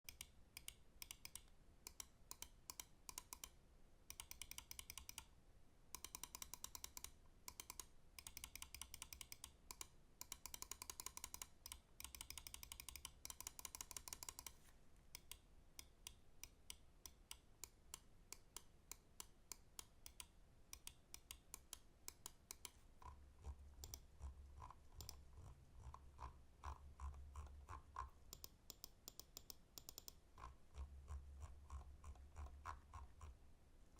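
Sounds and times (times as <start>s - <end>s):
mouse buttons clicking: 0.1s - 3.5s, 6.0s - 23.1s, 23.8s - 24.1s, 25.0s - 25.3s, 26.6s - 30.9s.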